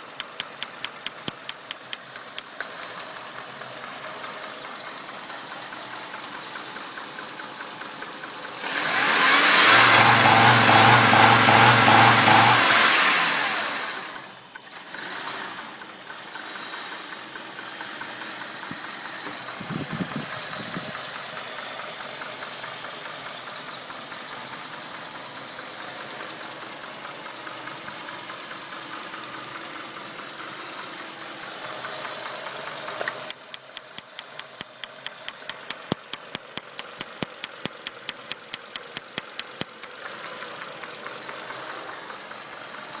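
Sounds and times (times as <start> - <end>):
car engine idling with misfire: 0.0 - 43.0
high-voltage spark snapping: 33.3 - 39.9.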